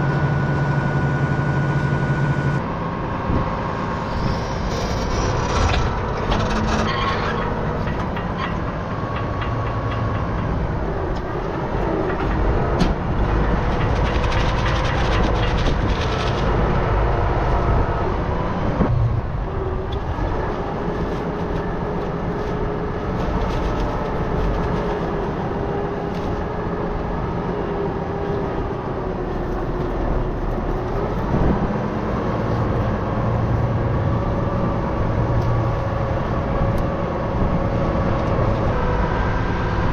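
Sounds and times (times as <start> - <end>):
tractor engine droning: 0.0 - 39.9
implement rattling and clattering: 4.7 - 16.6.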